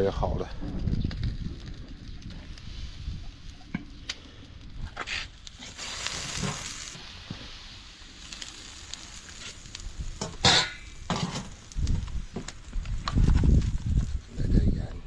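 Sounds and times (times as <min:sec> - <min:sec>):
food sizzling in a pot: 0:05.1 - 0:11.7.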